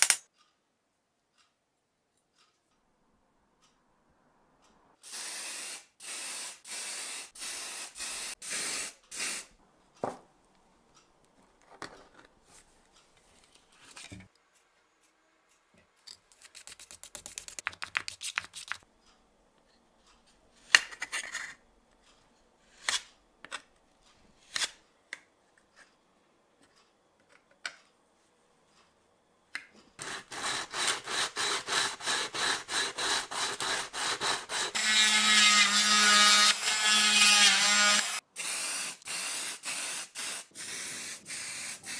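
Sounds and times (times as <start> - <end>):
short hissing bursts: 5.0 - 9.6, 38.4 - 41.9
rubbing strokes: 16.3 - 18.8.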